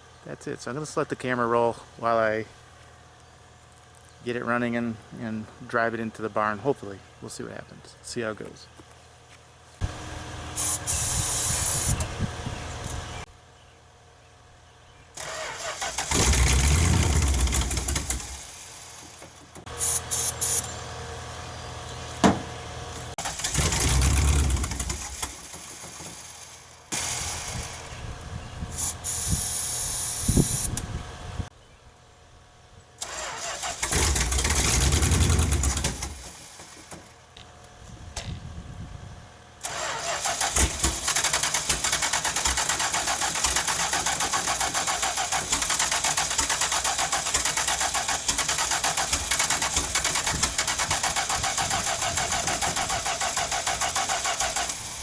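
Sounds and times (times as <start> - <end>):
car engine cranking: 15.2 - 20.8, 22.2 - 28.0, 33.0 - 37.2, 39.6 - 55.0.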